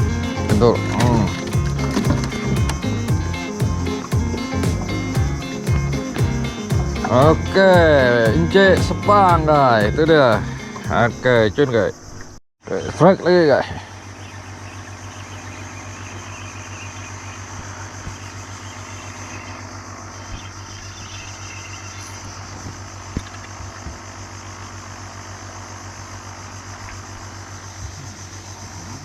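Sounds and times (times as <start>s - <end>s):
faint engine knocks: 0.0s - 11.1s, 17.4s - 18.8s, 22.0s - 25.1s
engine idling: 0.0s - 11.9s, 13.0s - 29.0s.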